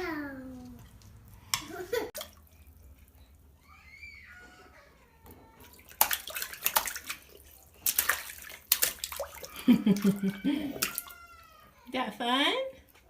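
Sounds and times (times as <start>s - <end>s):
young child's voice: 0.0s - 0.8s
water splashing in a bathtub: 0.6s - 13.0s.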